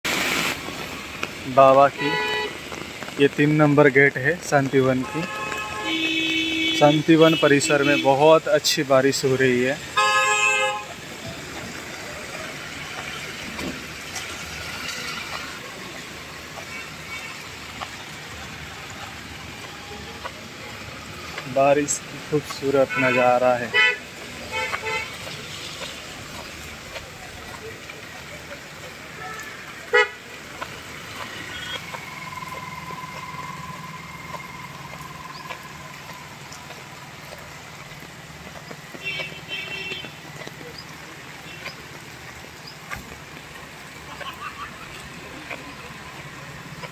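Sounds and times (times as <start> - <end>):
heavy rain hissing: 0.0 - 46.9
vehicle horn: 2.0 - 2.6, 5.0 - 8.2, 10.0 - 11.0, 22.9 - 25.2, 29.2 - 30.2, 31.2 - 34.6, 39.0 - 40.2.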